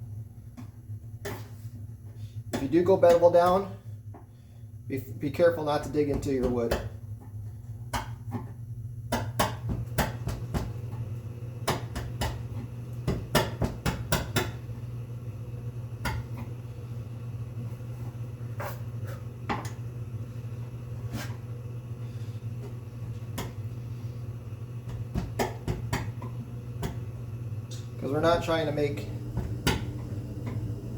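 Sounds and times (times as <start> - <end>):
low hum: 14.7 - 30.9.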